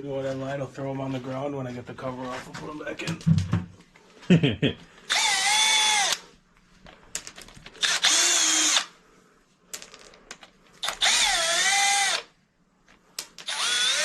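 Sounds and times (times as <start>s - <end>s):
power drill whining: 5.1s - 6.2s, 7.8s - 8.9s, 10.8s - 12.3s, 13.4s - 14.0s.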